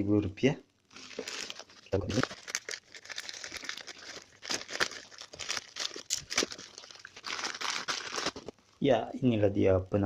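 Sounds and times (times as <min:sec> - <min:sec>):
plastic packaging crinkling: 0:00.9 - 0:08.7.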